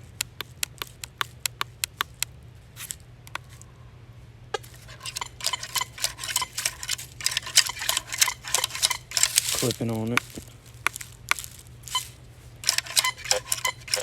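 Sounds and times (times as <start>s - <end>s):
steady low hum: 0.0s - 14.0s
crackly metal detector signal: 4.6s - 14.0s
metal detector clicks: 4.6s - 14.0s.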